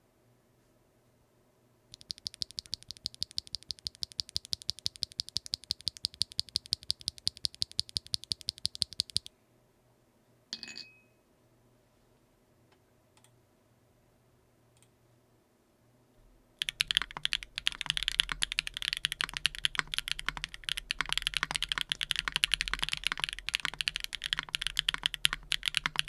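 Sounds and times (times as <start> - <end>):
mechanical keyboard typing: 1.9 - 9.3, 16.6 - 26.0.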